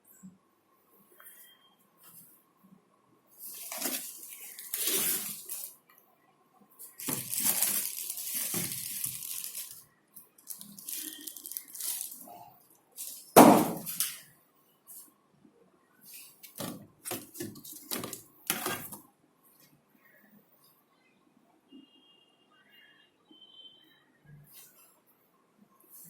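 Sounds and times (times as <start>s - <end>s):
faint steady tone: 0.0s - 3.3s, 19.9s - 26.0s.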